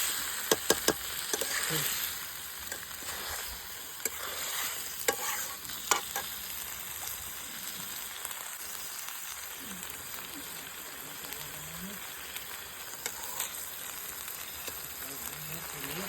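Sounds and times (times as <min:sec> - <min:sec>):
chicken sizzling in a pan: 0:00.0 - 0:16.0
sharp clicks against a pan: 0:00.4 - 0:01.5, 0:05.9 - 0:06.3.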